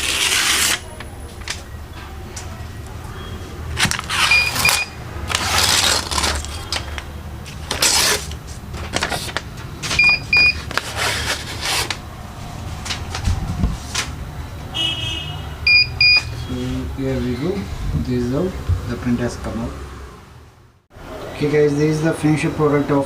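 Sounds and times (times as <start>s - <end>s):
short electronic beeps: 4.3s - 5.0s, 15.7s - 16.3s.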